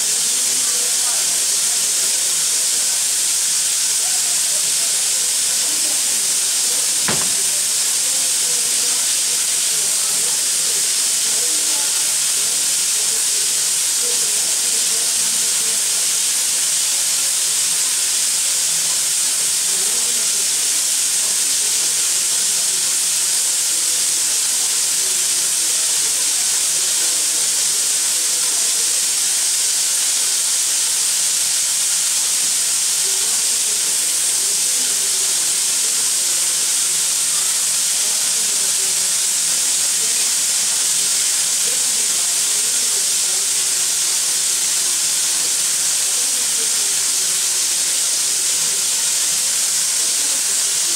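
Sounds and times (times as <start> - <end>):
steam venting hiss: 0.0 - 50.9
sharp click: 7.0 - 8.0.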